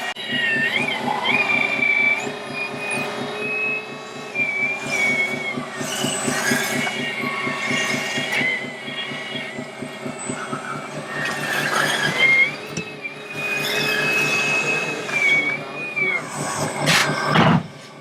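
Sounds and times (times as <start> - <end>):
electric motor whine: 0.0 - 18.0
low pulsing rumble: 0.2 - 13.3.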